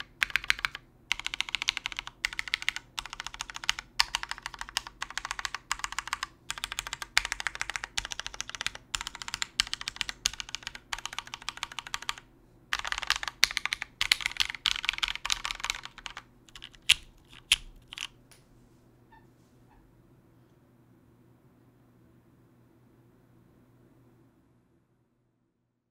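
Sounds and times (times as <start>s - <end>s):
mechanical keyboard clicking: 0.0s - 18.1s.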